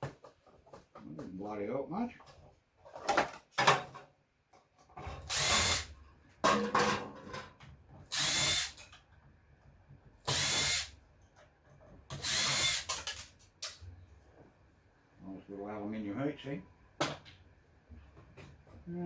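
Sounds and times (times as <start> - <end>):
power drill spinning: 5.3 - 5.9, 8.1 - 8.8, 10.2 - 11.0, 12.1 - 13.2.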